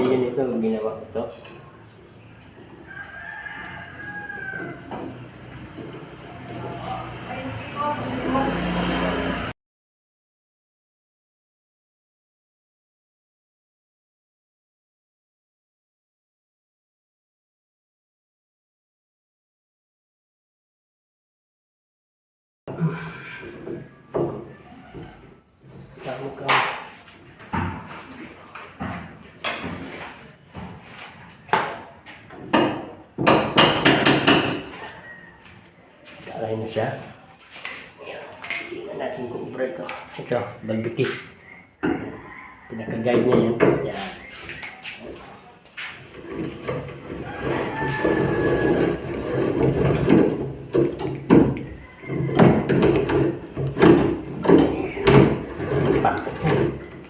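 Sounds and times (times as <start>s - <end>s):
hand brace boring through wood: 46.3s - 51.0s.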